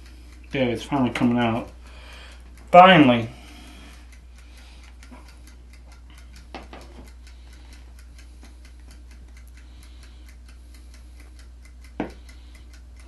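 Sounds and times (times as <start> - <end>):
kitchen timer ticking: 0.0 - 13.0
low steady hum: 0.0 - 13.0.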